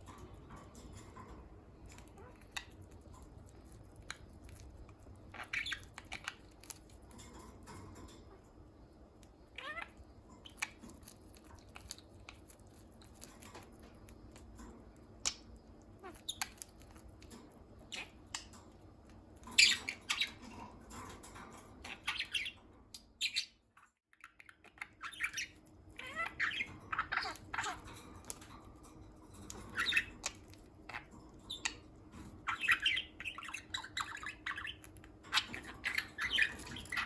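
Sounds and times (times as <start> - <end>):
budgerigars chirping and squawking: 4.1 - 8.4, 9.5 - 11.0, 15.2 - 16.8, 17.4 - 18.6, 19.4 - 37.0.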